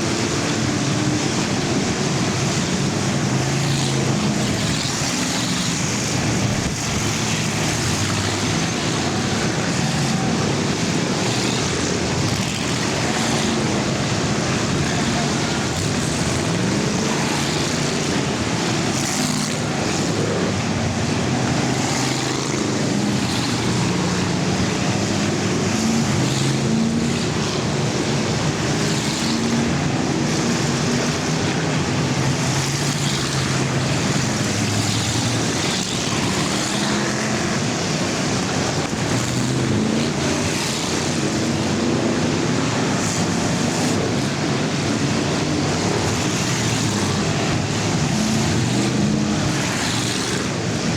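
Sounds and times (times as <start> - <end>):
engine and tyre noise: 0.0 - 50.9
race car engines: 0.0 - 50.9.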